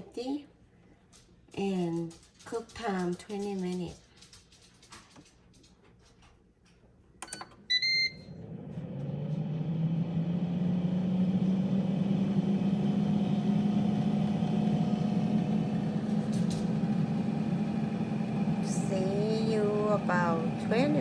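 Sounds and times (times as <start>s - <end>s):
air fryer fan whirring hum: 7.7s - 21.0s.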